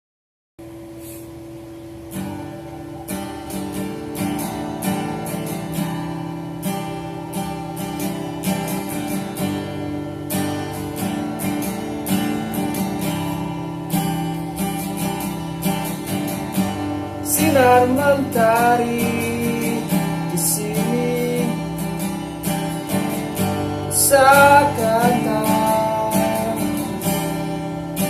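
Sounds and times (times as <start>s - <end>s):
acoustic guitar strumming: 0.6s - 28.0s.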